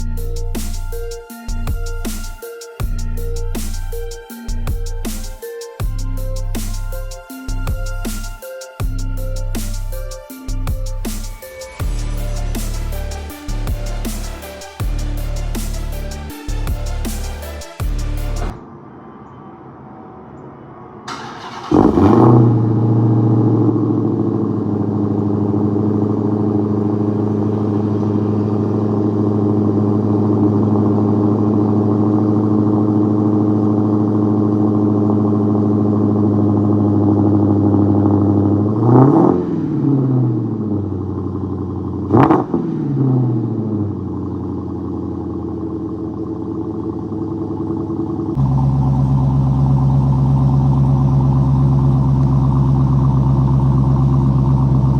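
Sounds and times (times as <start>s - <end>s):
car engine starting and idling: 0.0s - 18.6s, 21.1s - 54.9s
engine throttle blips: 21.1s - 54.9s.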